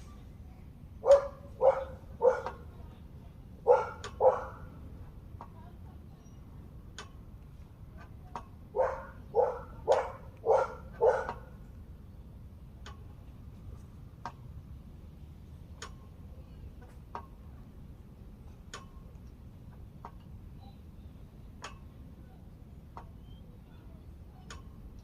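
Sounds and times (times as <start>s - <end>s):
dog barking: 1.0s - 2.6s, 3.7s - 4.6s, 8.8s - 11.4s.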